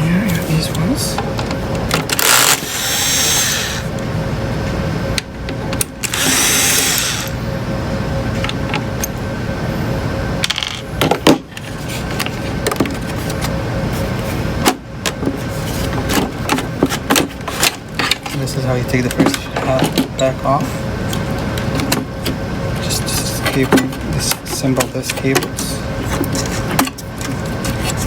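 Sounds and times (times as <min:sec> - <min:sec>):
electric screwdriver running: 0:02.1 - 0:03.9, 0:06.0 - 0:07.4.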